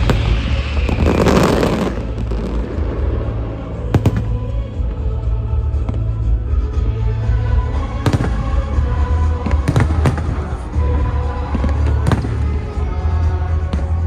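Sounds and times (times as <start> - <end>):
fireworks bangs: 0.0 - 5.1, 8.0 - 14.0
music: 0.0 - 14.0
steady low rumble: 0.0 - 14.0.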